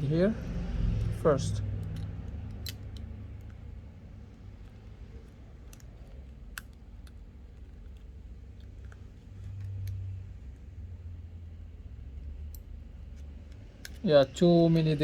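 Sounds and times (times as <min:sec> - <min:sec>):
low steady rumble: 0:00.0 - 0:15.0
faint sharp clicks of small parts: 0:01.8 - 0:10.2, 0:12.1 - 0:15.0.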